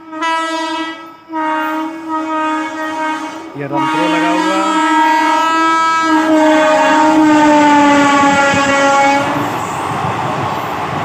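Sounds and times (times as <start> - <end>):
locomotive horn blast: 0.0 - 9.5
train rushing and clattering past: 6.9 - 11.0.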